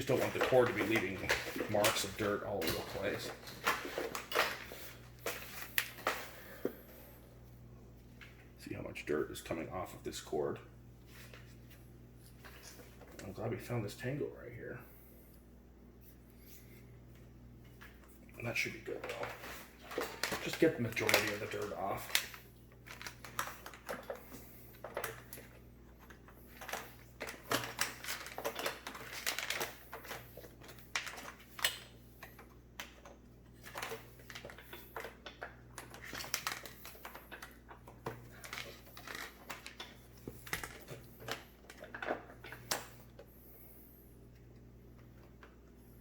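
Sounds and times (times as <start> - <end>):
rag rustling along cord: 0.0 - 6.7, 16.0 - 46.0.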